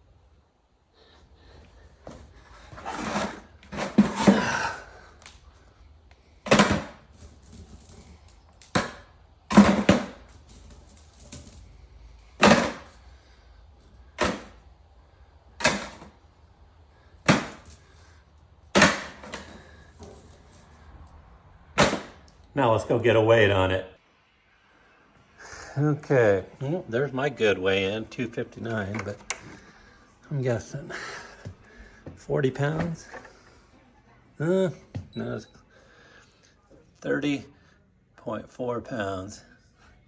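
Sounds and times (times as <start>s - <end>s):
scrap metal clunking into container: 2.5s - 4.8s, 6.4s - 11.6s, 12.4s - 13.0s.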